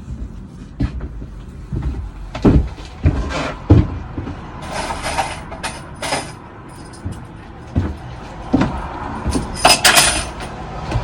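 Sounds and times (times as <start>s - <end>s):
short metallic scrapes: 4.6s - 6.4s.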